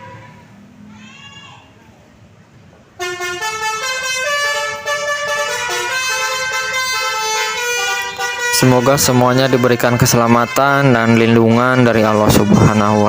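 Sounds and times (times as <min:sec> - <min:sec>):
musical air horn melody: 0:03.0 - 0:13.0.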